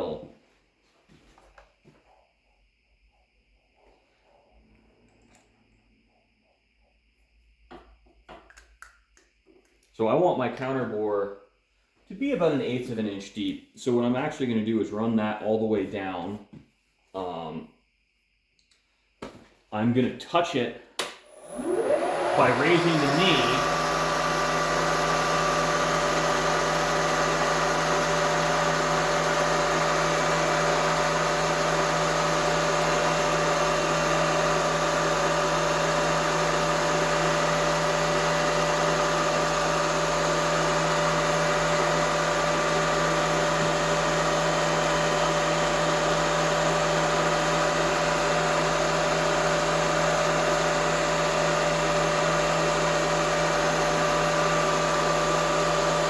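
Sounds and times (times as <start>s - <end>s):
milling machine motor humming: 21.2s - 56.0s.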